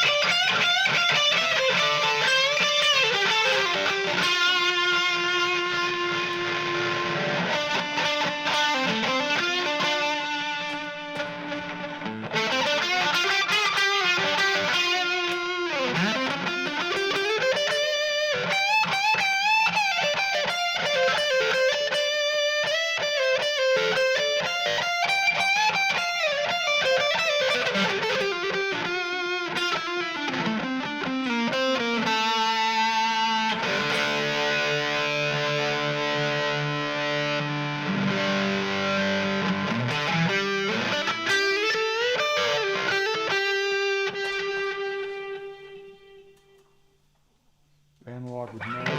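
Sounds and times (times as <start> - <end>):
electric guitar with delay: 0.0 - 46.7, 48.5 - 48.9.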